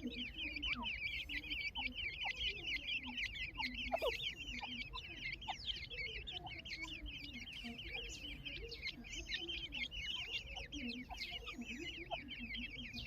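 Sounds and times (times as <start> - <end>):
chicks peeping: 0.0 - 13.0.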